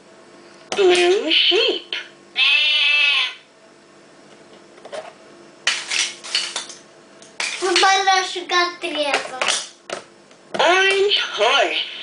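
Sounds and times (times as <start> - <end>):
toy playing sheep bleat: 2.3 - 3.5.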